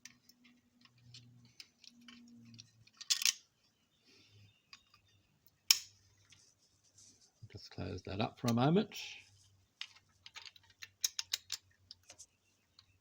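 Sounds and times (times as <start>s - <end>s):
clicks of model car parts: 0.0s - 3.4s, 5.7s - 5.9s, 9.8s - 13.0s.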